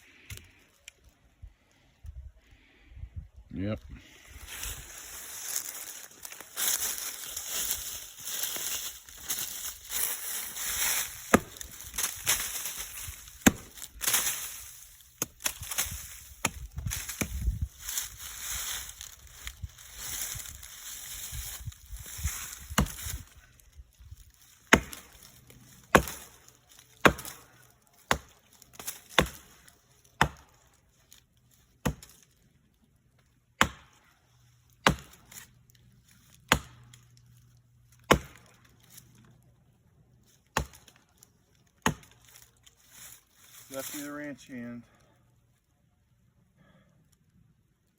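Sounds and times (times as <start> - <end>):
axe chopping wood: 11.0 - 12.6, 13.3 - 14.4, 15.2 - 17.6, 22.6 - 23.2, 24.7 - 25.3, 25.9 - 30.6, 31.8 - 32.2, 33.6 - 34.1, 34.8 - 35.5, 36.5 - 36.9, 38.0 - 38.6, 40.5 - 41.0, 41.8 - 42.3.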